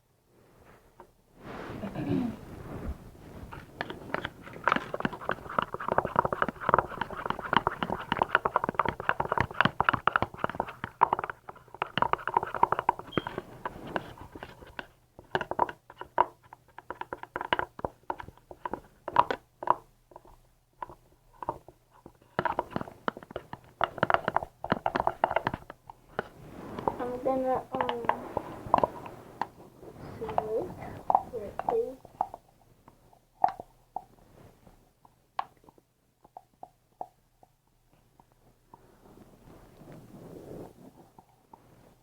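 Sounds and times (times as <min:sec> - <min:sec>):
slime stirred in plastic container: 0:02.6 - 0:32.4.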